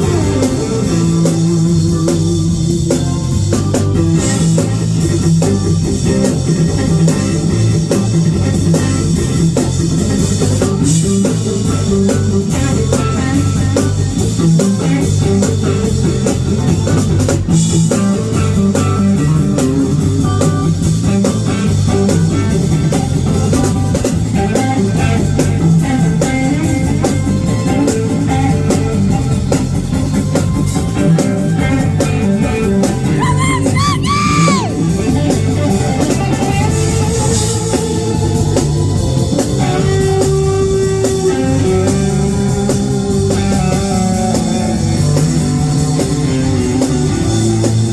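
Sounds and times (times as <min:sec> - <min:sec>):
heavy low bass line: 0:00.0 - 0:23.6
drum kit: 0:00.0 - 0:47.9
electric guitar: 0:00.0 - 0:47.9.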